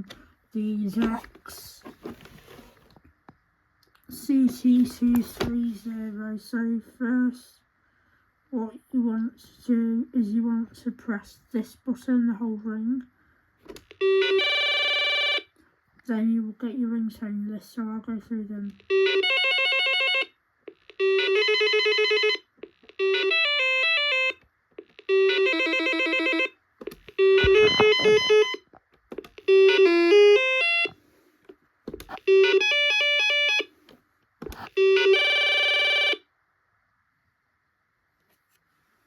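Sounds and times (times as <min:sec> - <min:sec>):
telephone ringtone melodies: 0:14.0 - 0:15.4, 0:18.9 - 0:20.3, 0:21.0 - 0:24.4, 0:25.0 - 0:26.6, 0:27.2 - 0:28.6, 0:29.4 - 0:31.0, 0:32.2 - 0:33.7, 0:34.8 - 0:36.2.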